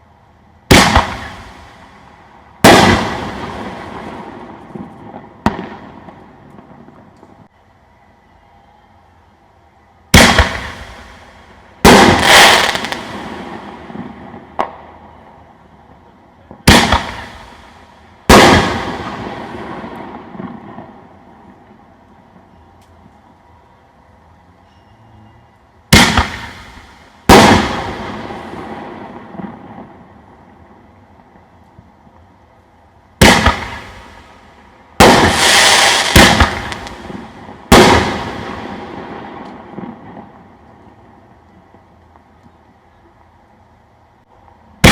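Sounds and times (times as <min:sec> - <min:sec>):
firework booms: 0:00.7 - 0:02.0, 0:02.6 - 0:07.0, 0:10.1 - 0:14.8, 0:16.6 - 0:21.1, 0:25.9 - 0:30.1, 0:33.2 - 0:40.6.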